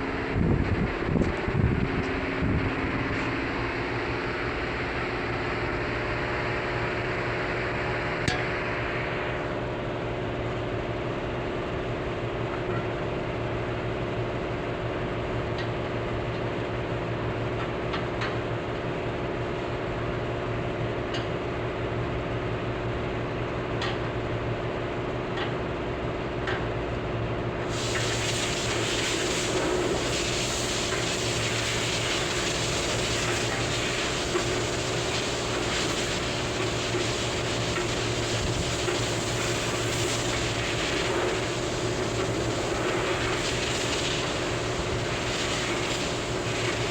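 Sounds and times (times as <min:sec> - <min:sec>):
loud steady hiss: 0:27.7 - 0:46.9
machine hum: 0:27.7 - 0:46.9.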